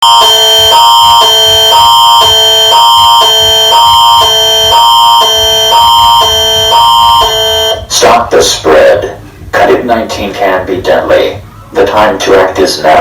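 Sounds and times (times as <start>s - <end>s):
emergency alert tone: 0.0s - 8.0s.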